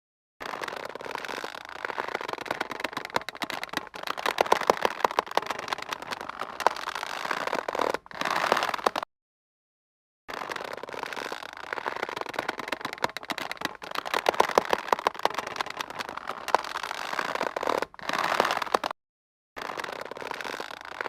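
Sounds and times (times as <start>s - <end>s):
taut rope creaking and squeaking: 0.4s - 9.1s, 10.3s - 19.0s, 19.6s - 21.0s.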